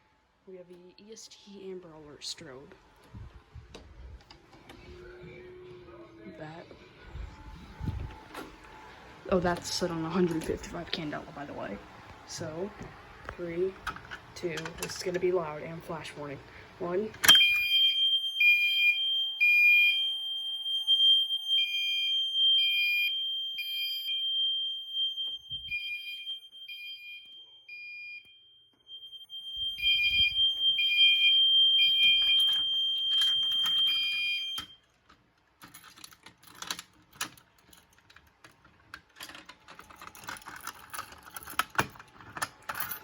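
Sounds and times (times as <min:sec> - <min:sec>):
clicking and rustling handling noise: 0:12.8 - 0:15.4, 0:31.9 - 0:43.0
continuous high alarm tone: 0:17.2 - 0:34.8
fire alarm horn beeping: 0:17.2 - 0:34.8.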